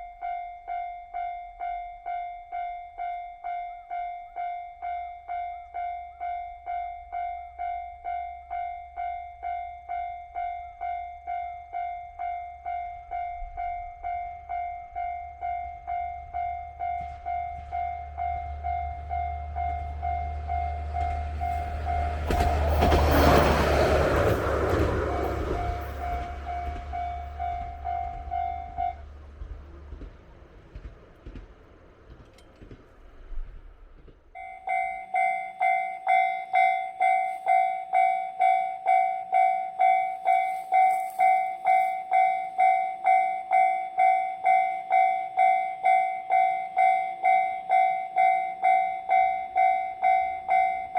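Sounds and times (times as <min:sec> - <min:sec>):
level-crossing warning bell ringing: 0:00.0 - 0:29.6, 0:34.4 - 0:50.9
diesel railcar rumbling past: 0:10.3 - 0:50.9.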